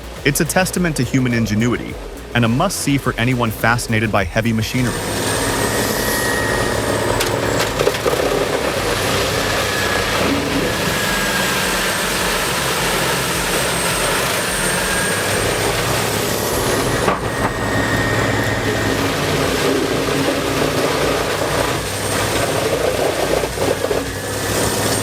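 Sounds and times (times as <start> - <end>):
high machine whine: 0.0 - 25.0
wood chipping machine engine: 0.0 - 25.0.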